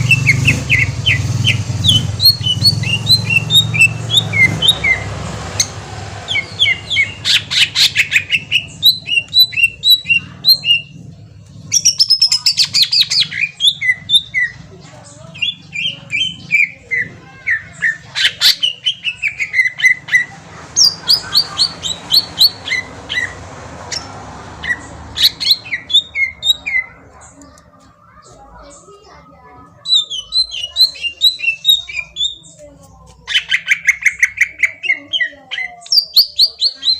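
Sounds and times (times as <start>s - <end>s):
bird singing fast whistled song: 0.0s - 5.1s, 6.3s - 10.9s, 24.6s - 26.9s, 29.9s - 32.5s, 33.3s - 36.9s.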